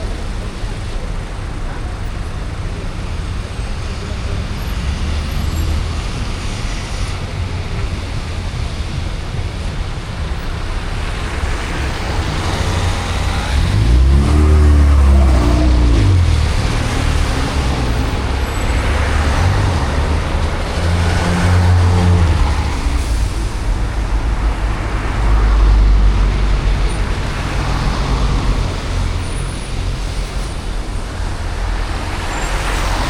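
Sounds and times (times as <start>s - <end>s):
engine drone: 0.0s - 33.0s
tyres hissing on wet road: 0.0s - 33.0s
vehicle engine passing by: 11.6s - 30.5s.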